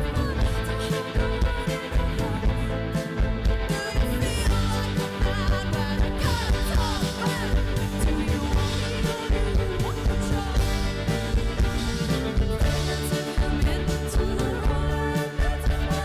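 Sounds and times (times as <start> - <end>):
rock band playing live: 0.0 - 16.0.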